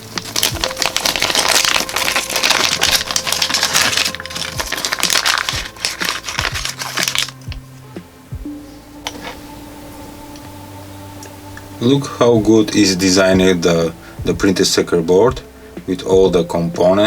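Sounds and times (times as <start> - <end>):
packaging crinkling: 0.0 - 7.6.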